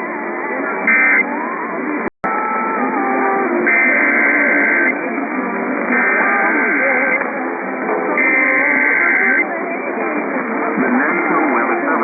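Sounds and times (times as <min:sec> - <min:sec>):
background music: 0:00.0 - 0:12.0
two-tone digital data burst: 0:00.9 - 0:01.3.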